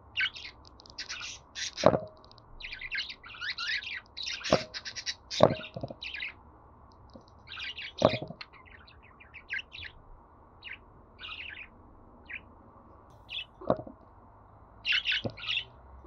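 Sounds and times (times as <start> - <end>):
budgerigars chirping and warbling: 0.2 - 2.0, 2.6 - 6.4, 7.4 - 10.0, 10.6 - 12.5, 13.2 - 13.6, 14.8 - 15.8.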